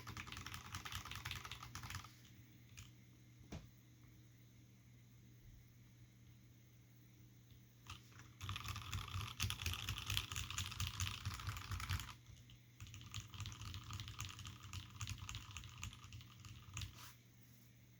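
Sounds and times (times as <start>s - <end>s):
typing on a mechanical keyboard: 0.0s - 2.9s, 7.8s - 17.0s.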